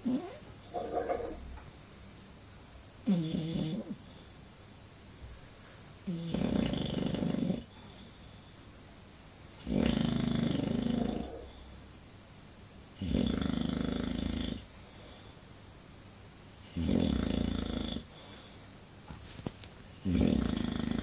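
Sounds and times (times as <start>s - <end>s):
dog snoring: 0.0s - 1.4s, 3.0s - 4.0s, 6.0s - 8.2s, 9.6s - 11.6s, 13.0s - 14.7s, 16.6s - 18.4s, 20.0s - 21.0s.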